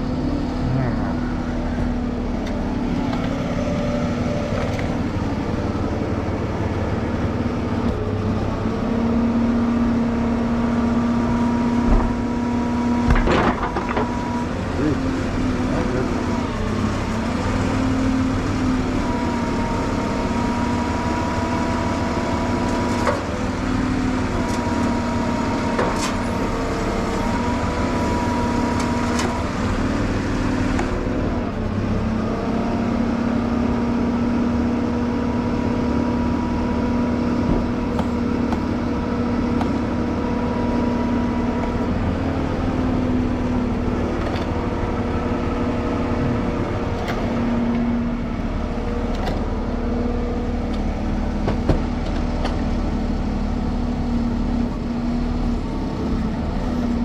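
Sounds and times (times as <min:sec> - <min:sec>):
truck engine running: 0:00.0 - 0:57.0
thin steady whine: 0:26.1 - 0:29.6.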